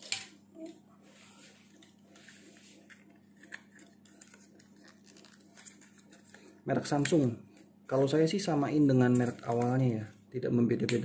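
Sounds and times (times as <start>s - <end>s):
packaging rustling: 1.4s - 7.4s, 8.0s - 10.1s.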